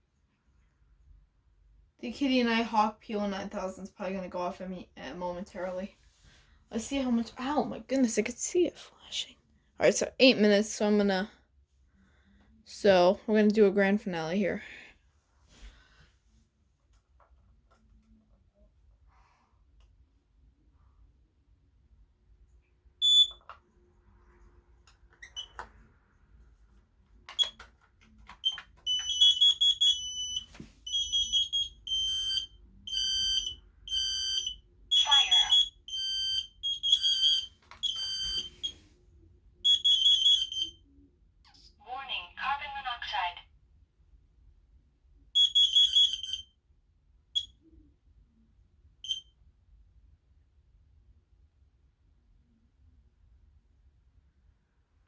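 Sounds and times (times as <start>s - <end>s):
smoke alarms beeping: 23.0s - 23.4s, 28.4s - 38.8s, 39.6s - 40.8s, 45.4s - 46.5s, 49.0s - 49.3s.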